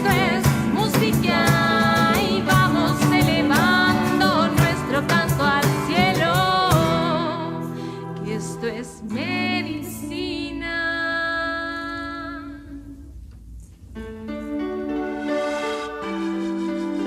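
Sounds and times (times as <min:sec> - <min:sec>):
person singing with vibrato: 0:00.0 - 0:13.2.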